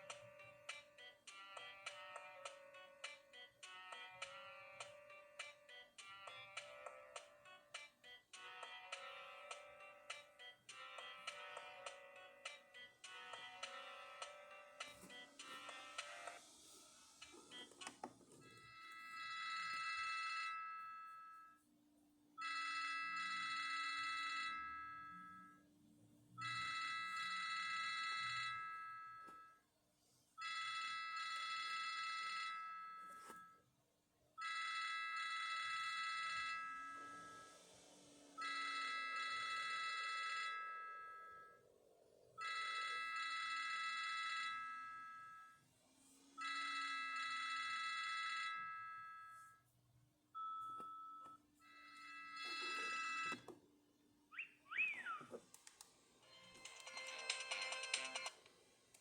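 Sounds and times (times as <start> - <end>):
phone ringtone: 0.0 - 16.5, 17.3 - 21.7, 22.4 - 25.8, 26.4 - 29.7, 30.4 - 33.7, 34.4 - 45.7, 46.4 - 49.7, 50.3 - 53.5, 56.2 - 58.5.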